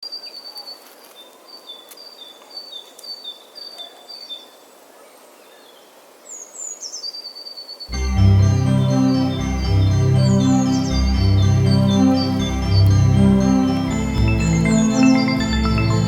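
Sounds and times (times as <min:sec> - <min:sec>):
faint outdoor hiss: 0:00.0 - 0:16.0
songbird singing: 0:00.0 - 0:16.0.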